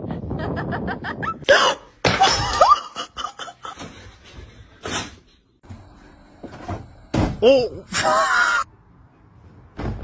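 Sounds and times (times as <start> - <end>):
person laughing: 2.2 - 3.9.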